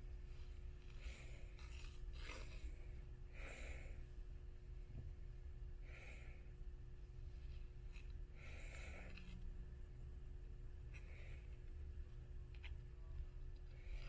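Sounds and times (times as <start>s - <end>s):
soft breathy breathing: 0.0s - 9.5s, 10.8s - 12.1s, 13.6s - 14.0s
faint hum: 0.0s - 14.0s
steady low rumble: 0.0s - 14.0s.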